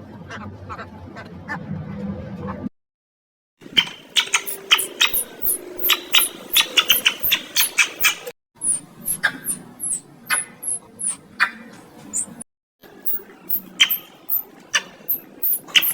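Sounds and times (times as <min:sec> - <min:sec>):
small animal squeaking: 0:03.8 - 0:12.4, 0:13.0 - 0:15.9.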